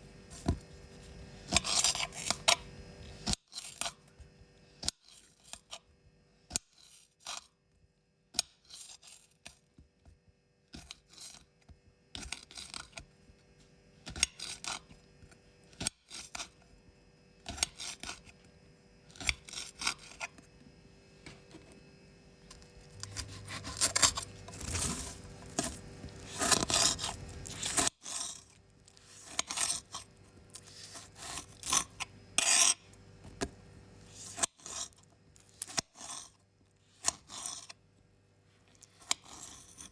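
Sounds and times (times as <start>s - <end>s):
knife slicing vegetables: 22.9s - 32.8s.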